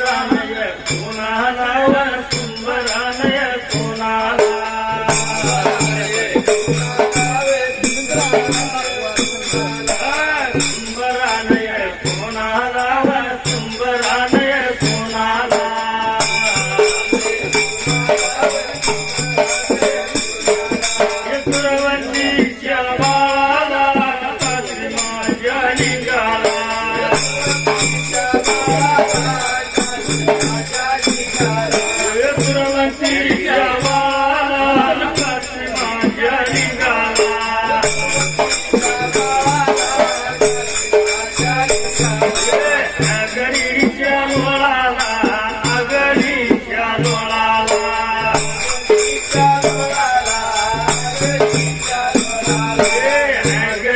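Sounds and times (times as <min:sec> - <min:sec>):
jingling rattle percussion: 0:00.0 - 0:53.9
steady drum beat: 0:00.0 - 0:53.9.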